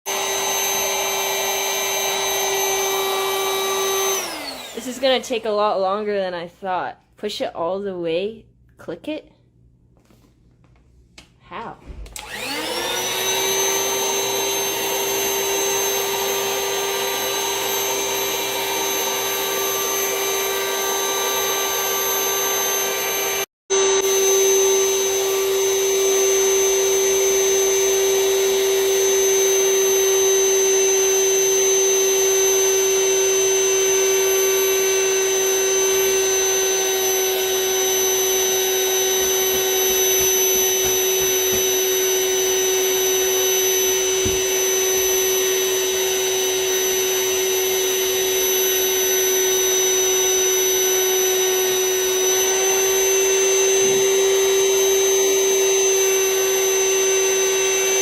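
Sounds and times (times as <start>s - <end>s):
vacuum cleaner high whine: 0.0s - 6.0s, 12.0s - 58.0s.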